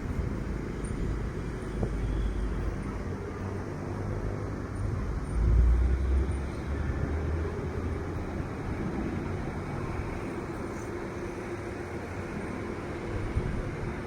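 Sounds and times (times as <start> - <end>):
heavy vehicle engine rumbling: 0.0 - 14.0.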